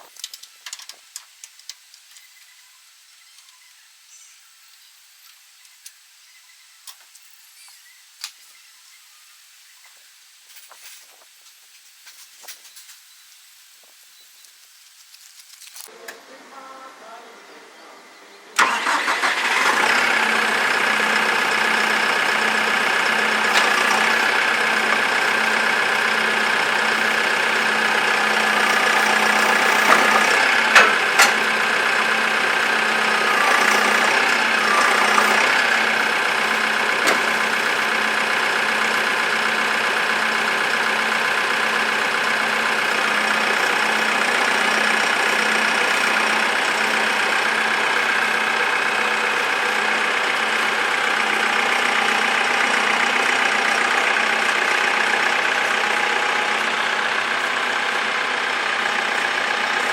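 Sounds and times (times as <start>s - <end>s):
tractor engine idling: 18.5s - 59.9s.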